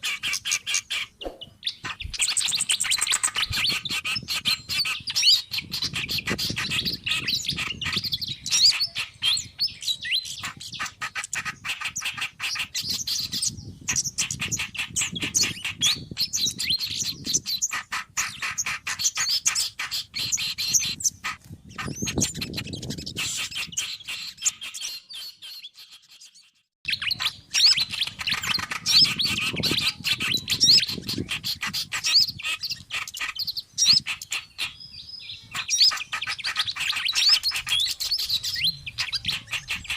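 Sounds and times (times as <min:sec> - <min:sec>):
songbirds chirping and twittering: 0:00.0 - 0:39.9.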